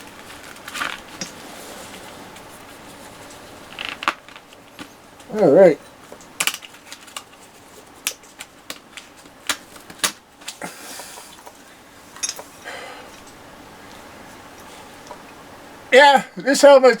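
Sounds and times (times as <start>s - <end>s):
helmet and mask clicks and knocks: 6.1s - 10.6s.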